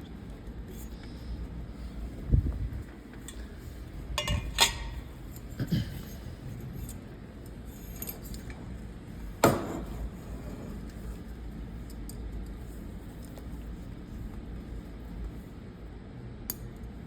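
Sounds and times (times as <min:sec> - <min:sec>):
hard parts knocking and clinking: 0:04.1 - 0:05.1.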